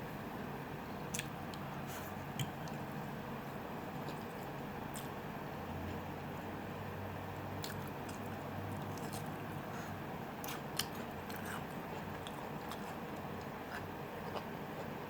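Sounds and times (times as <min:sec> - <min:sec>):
person chewing food: 0:01.1 - 0:02.9, 0:03.9 - 0:05.2, 0:07.6 - 0:15.0.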